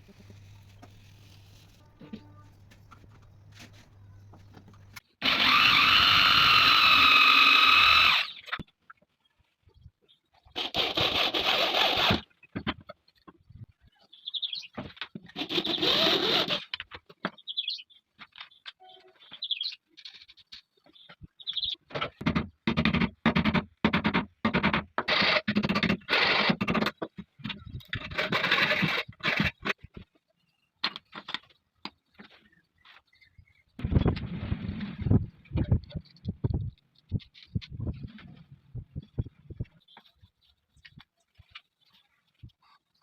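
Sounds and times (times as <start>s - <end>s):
hand tool scraping wood: 23.9s - 29.8s.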